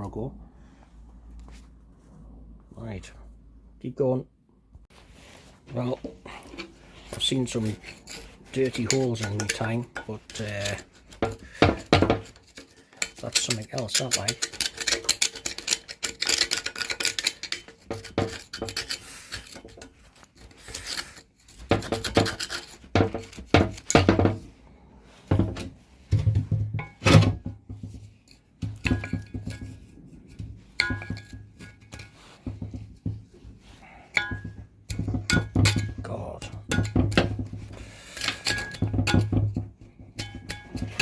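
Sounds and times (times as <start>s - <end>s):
scraping and knocking on metal: 5.1s - 41.0s
wire brush rasping: 7.0s - 24.0s.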